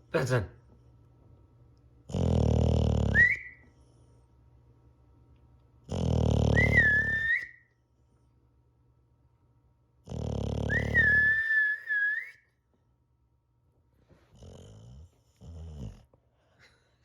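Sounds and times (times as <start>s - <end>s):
dog snoring with whistle: 2.1s - 3.7s, 5.8s - 7.6s, 10.0s - 12.0s, 14.3s - 16.1s.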